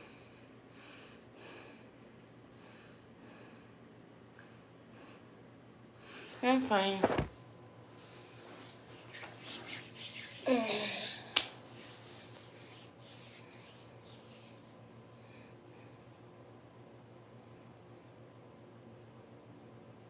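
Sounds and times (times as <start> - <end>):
rubbing and rustling: 6.2 - 16.4
falling vocal hum: 10.0 - 11.6.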